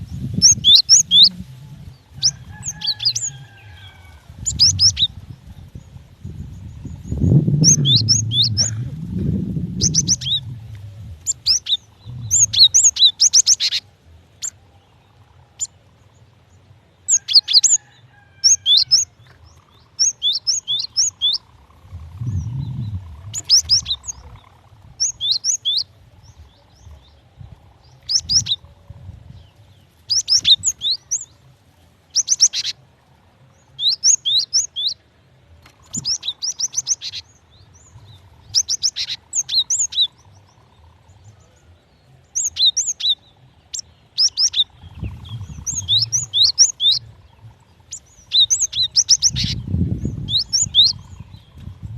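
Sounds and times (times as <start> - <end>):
tit chirping calls: 0.2 - 1.5, 4.4 - 5.2, 7.1 - 14.6, 19.8 - 26.0, 30.0 - 31.3, 32.1 - 32.8, 35.8 - 37.3, 37.9 - 40.8, 42.4 - 51.9.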